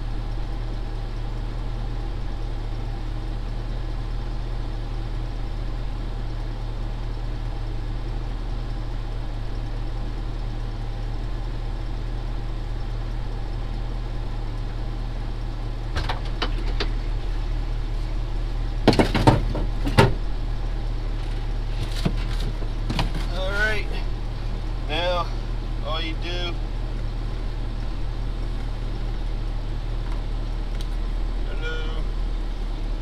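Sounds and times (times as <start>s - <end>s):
truck engine idling: 0.0s - 33.0s
sharp knocks: 18.8s - 20.2s.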